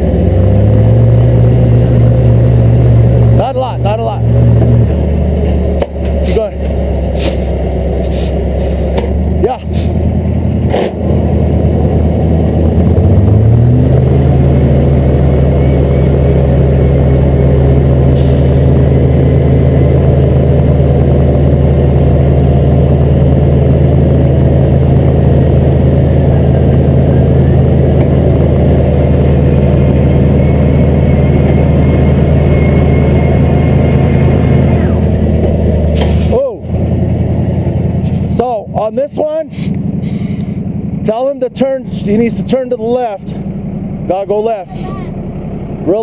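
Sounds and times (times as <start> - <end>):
heavy truck engine revving: 0.0 - 46.0
faint high whine: 28.9 - 35.1.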